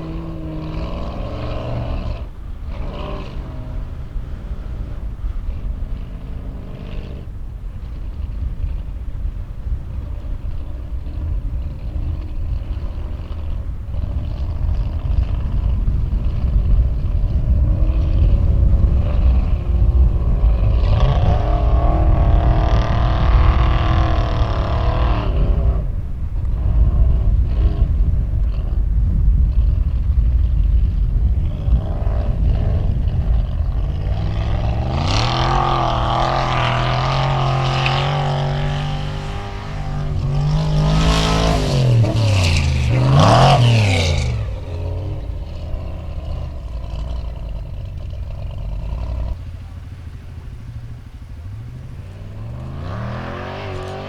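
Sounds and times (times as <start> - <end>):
engine revving hard: 0.0 - 7.4, 17.2 - 26.0, 31.4 - 50.3, 51.1 - 54.0.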